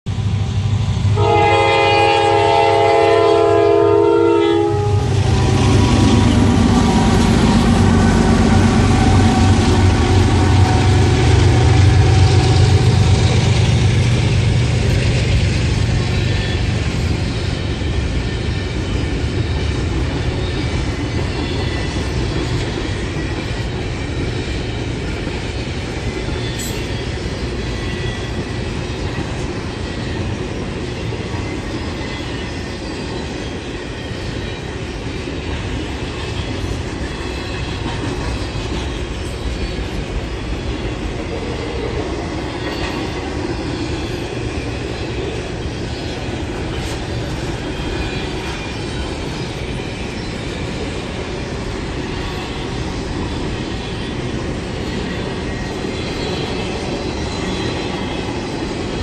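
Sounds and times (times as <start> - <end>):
clatter of train cars: 0.1 - 59.0
locomotive drone: 0.1 - 59.0
train horn chord: 1.1 - 13.0.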